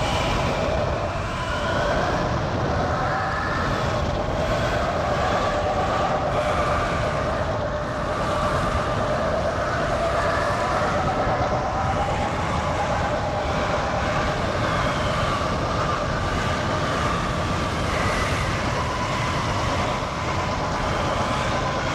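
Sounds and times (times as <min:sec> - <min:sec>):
faint wind whistling: 0:00.0 - 0:21.9
roaring tornado wind: 0:00.0 - 0:21.9.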